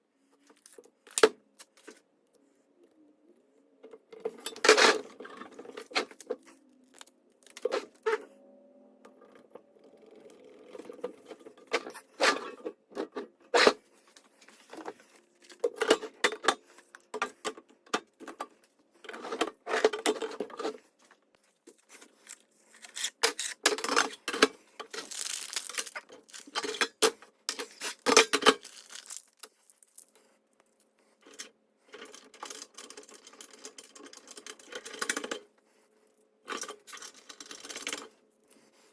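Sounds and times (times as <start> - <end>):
small hard parts clicking: 21.7 - 35.5.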